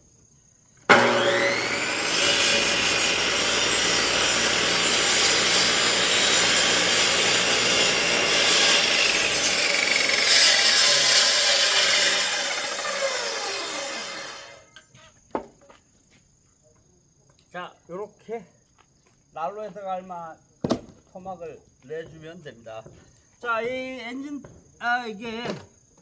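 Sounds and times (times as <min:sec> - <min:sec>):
electric saw motor whining: 0:00.9 - 0:14.6
saw blade cutting log: 0:00.9 - 0:14.6.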